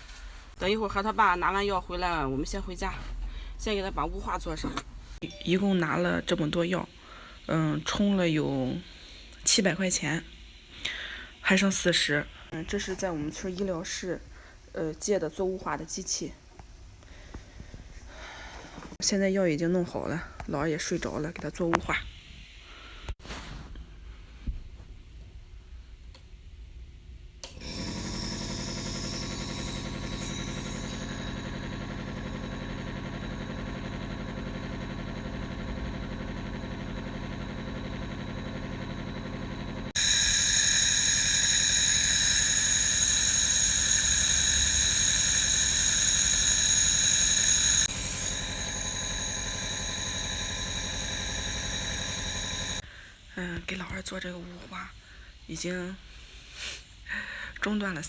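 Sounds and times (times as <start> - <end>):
nebulizer motor hum: 27.4 - 52.8.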